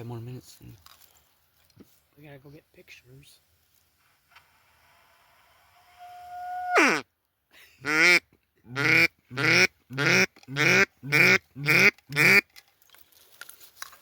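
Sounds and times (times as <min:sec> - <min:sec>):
duck call quacking: 0:06.8 - 0:07.0, 0:07.8 - 0:12.4.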